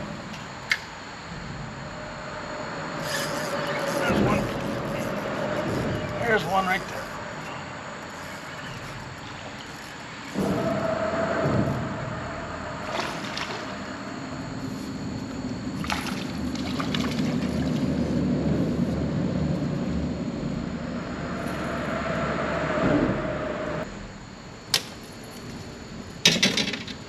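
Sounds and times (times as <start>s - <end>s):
water sloshing against hull: 1.6s - 18.9s
small boat motor running: 1.7s - 10.7s, 11.4s - 20.8s.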